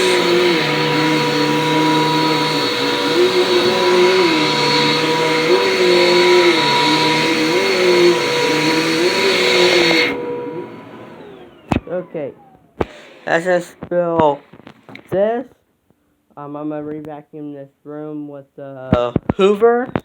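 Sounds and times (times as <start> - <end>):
vacuum motor winding down: 0.0 - 13.8
vacuum cleaner running: 0.0 - 13.9.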